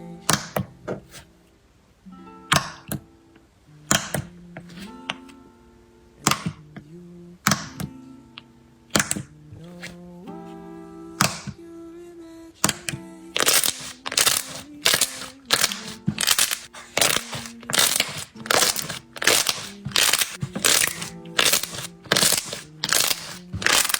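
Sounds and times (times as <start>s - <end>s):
soft background music: 0.0s - 23.9s
slime crackling pops: 13.4s - 23.9s.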